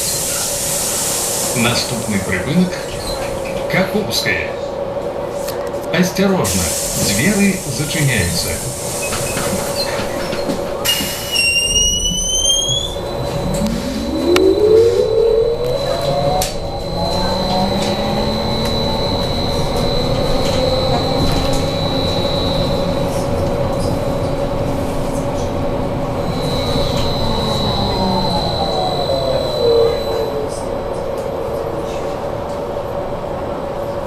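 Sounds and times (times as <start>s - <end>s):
trolleybus electric drive whining: 0.0s - 34.0s
steady hum: 12.9s - 24.8s.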